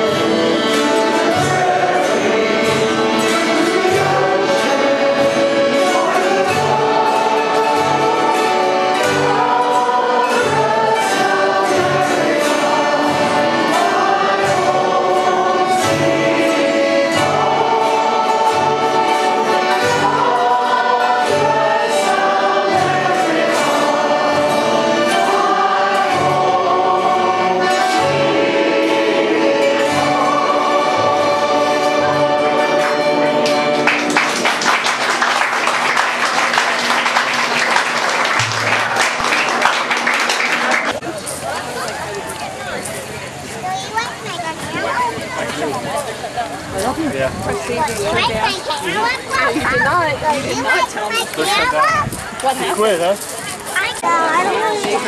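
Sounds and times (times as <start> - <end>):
choral singing with orchestra: 0.0 - 41.0, 54.0 - 55.0.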